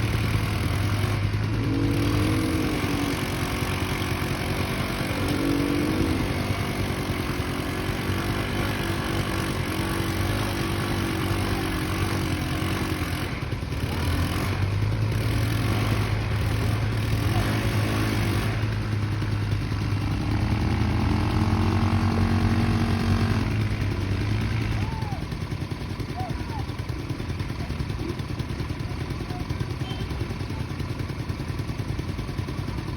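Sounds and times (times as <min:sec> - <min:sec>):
atv engine revving: 0:00.0 - 0:32.9.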